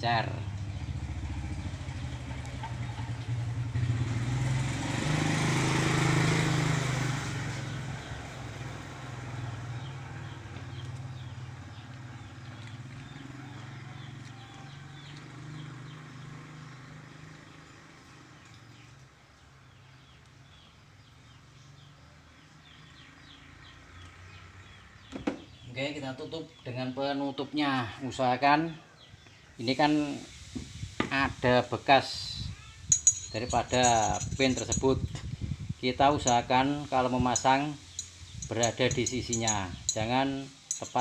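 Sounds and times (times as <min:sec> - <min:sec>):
motorcycle engine passing: 0:00.2 - 0:18.8, 0:32.2 - 0:41.0.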